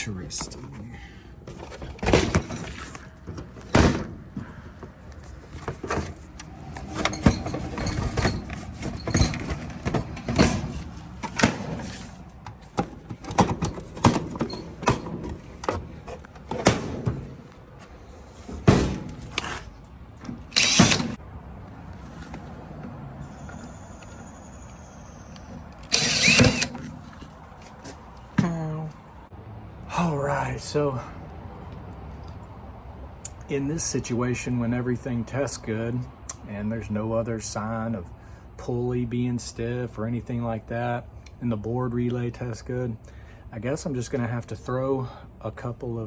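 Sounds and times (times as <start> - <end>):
metal scraping: 1.5 - 21.2
metal parts and tools knocking: 6.8 - 17.4, 20.4 - 21.2.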